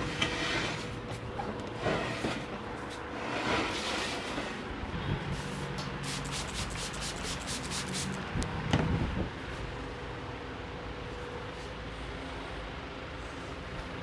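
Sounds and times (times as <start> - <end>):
hands rubbing over skin and clothing: 6.0 - 8.2.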